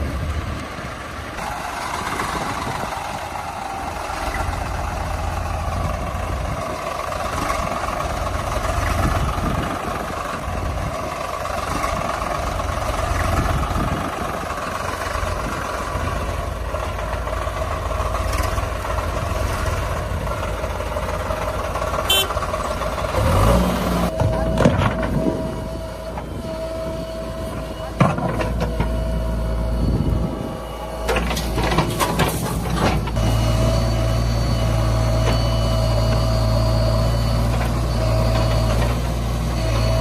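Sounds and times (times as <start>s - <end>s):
diesel engine rumbling: 0.0s - 40.0s.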